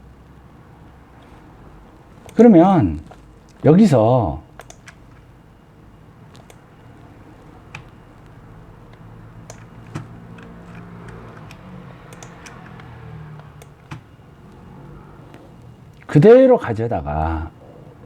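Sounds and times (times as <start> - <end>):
faint low hum: 0.0 - 18.0
mouse and keyboard clicks: 4.6 - 5.2, 6.3 - 6.6, 7.6 - 8.0, 8.9 - 14.6.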